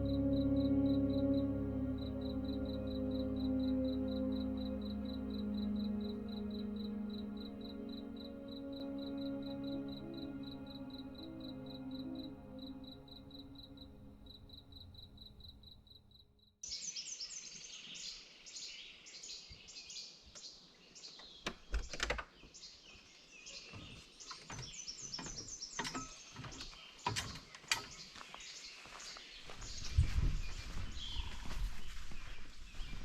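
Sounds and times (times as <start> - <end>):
soft low tones: 0.0 - 16.1
cricket chirping: 0.0 - 16.5.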